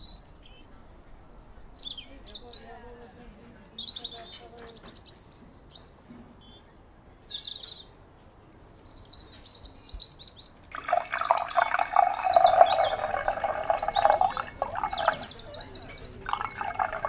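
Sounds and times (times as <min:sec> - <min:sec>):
songbird singing: 0:00.0 - 0:17.0
running water rushing: 0:10.7 - 0:17.0.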